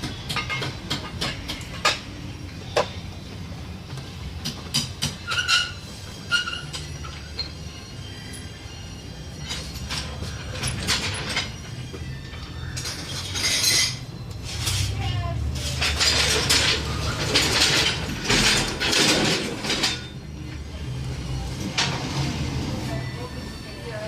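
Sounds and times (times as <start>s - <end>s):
metal tools clinking and scraping: 0.0s - 3.0s, 4.6s - 20.9s.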